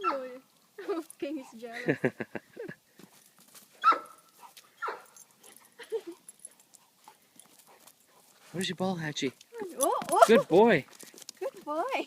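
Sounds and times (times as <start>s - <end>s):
dog crying high-pitched: 3.8s - 4.1s.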